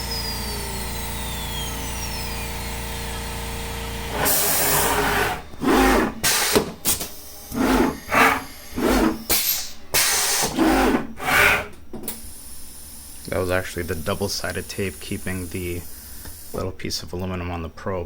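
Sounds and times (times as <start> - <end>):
cnc router machine hum: 0.0 - 9.3, 10.4 - 11.8
air duster blasts: 4.1 - 11.7.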